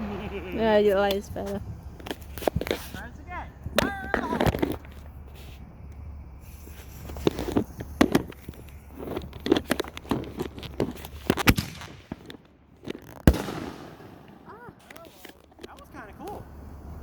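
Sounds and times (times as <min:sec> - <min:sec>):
firework bang: 0:00.0 - 0:03.0, 0:11.3 - 0:12.4, 0:13.2 - 0:15.3
firework fuse hiss: 0:00.0 - 0:09.0, 0:12.9 - 0:17.0
firework pops and cracks: 0:00.0 - 0:16.5.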